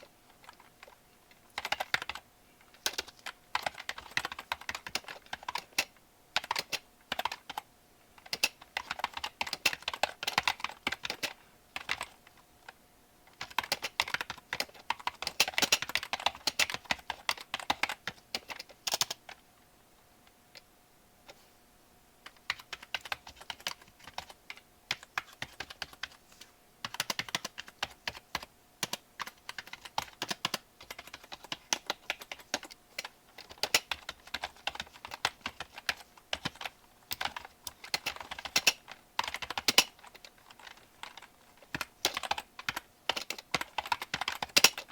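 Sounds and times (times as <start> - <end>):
keyboard typing clicks: 2.8 - 7.6, 8.2 - 12.2, 13.4 - 19.4, 26.8 - 44.9.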